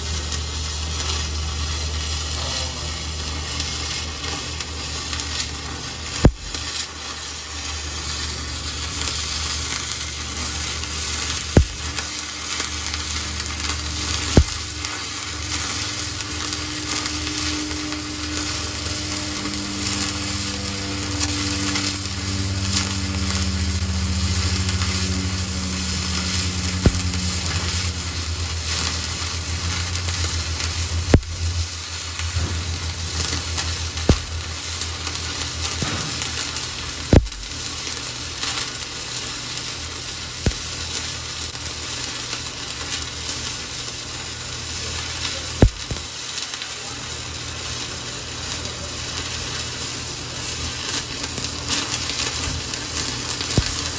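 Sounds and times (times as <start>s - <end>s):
sharp welding pops: 0.0s - 53.9s
welding arc crackling and sizzling: 0.0s - 53.9s
low hum: 6.2s - 6.7s, 8.6s - 37.9s.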